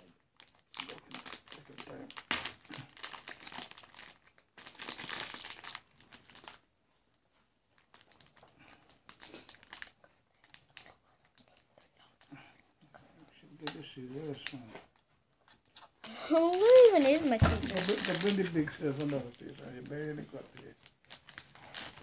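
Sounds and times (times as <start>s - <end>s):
plastic bag crinkling: 0.4s - 7.2s, 7.8s - 11.6s, 14.2s - 14.9s, 16.3s - 22.0s.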